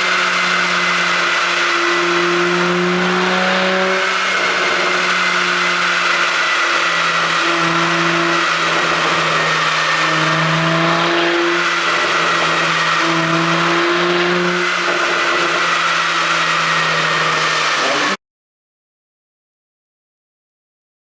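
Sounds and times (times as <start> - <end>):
car engine drone: 0.0 - 18.2
loud rushing noise: 17.4 - 18.2.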